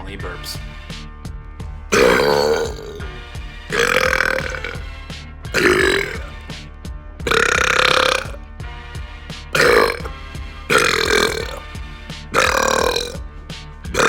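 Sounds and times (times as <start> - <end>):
background music: 0.0 - 14.0
man burping loudly: 1.9 - 3.1, 3.7 - 4.9, 5.6 - 6.4, 7.3 - 8.4, 9.6 - 10.1, 10.7 - 11.6, 12.4 - 13.2.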